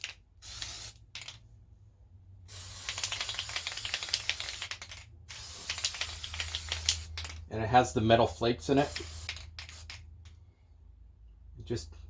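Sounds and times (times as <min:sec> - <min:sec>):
spray paint hissing: 0:00.0 - 0:01.4, 0:02.5 - 0:07.4, 0:08.8 - 0:10.0.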